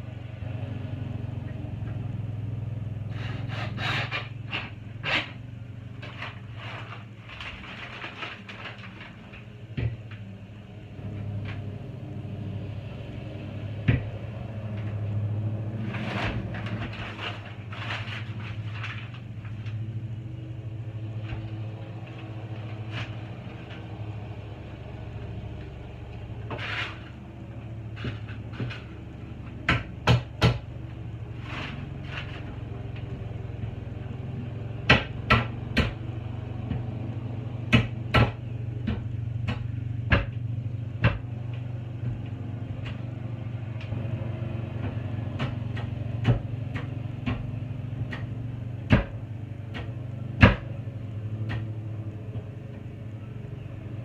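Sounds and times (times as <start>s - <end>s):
sharp knocks and clicks: 34.9s - 36.0s, 37.7s - 43.0s, 44.8s - 50.8s, 51.4s - 52.5s.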